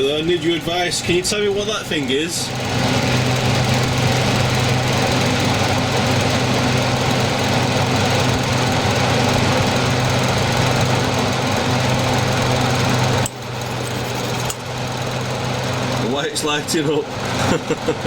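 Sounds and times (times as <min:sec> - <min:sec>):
dehumidifier compressor humming: 0:00.0 - 0:18.0.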